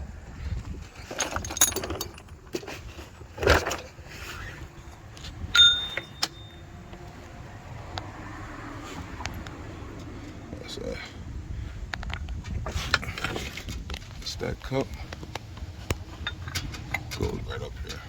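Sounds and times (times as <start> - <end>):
sharp ringing metal clank: 5.5 - 6.7
metal hand tools clinking: 5.6 - 6.6.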